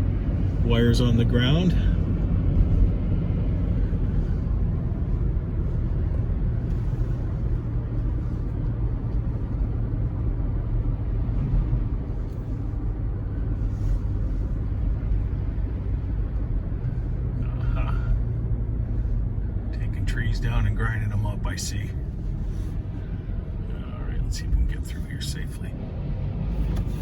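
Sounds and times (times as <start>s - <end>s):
car engine and tyre rumble: 0.0s - 27.0s.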